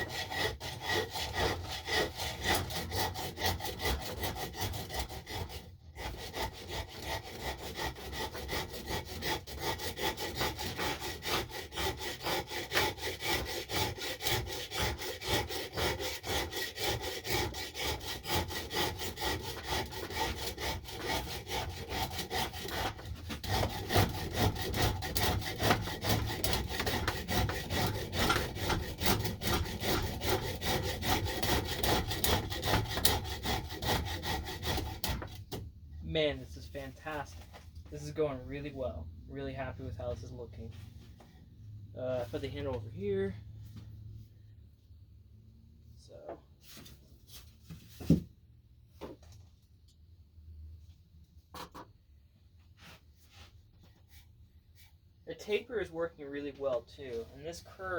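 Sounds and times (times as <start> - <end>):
hand tool rasping wood: 0.0 - 37.2.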